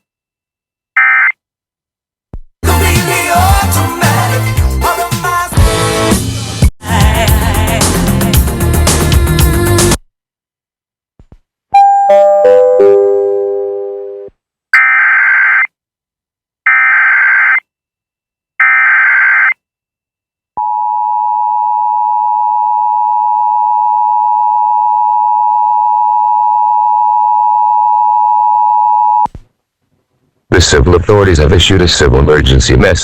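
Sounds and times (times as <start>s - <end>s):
two-tone alert signal: 11.8s - 15.6s.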